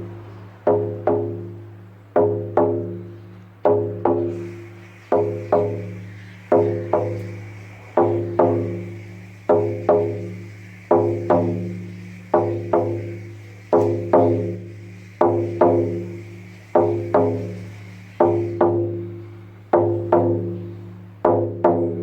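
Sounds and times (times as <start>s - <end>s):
frame drum beating: 0.0s - 22.0s.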